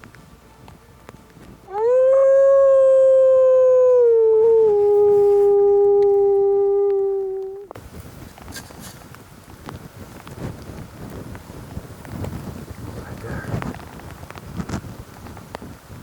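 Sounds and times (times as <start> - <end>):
wolf-style howl: 1.7 - 7.7.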